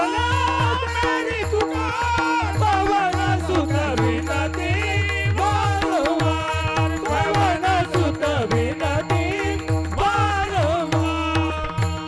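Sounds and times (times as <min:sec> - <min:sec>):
devotional melody: 0:00.0 - 0:12.0
fast drum beats: 0:00.0 - 0:12.0.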